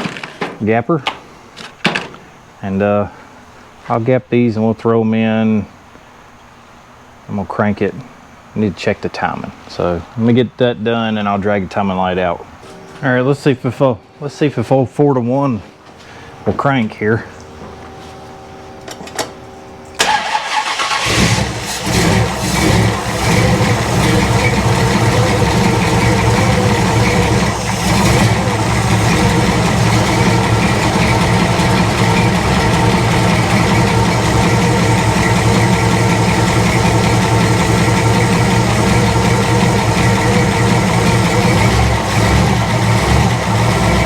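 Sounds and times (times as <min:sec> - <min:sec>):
starter cranking engine: 0:20.0 - 0:44.0
car engine revving and idling: 0:20.2 - 0:44.0.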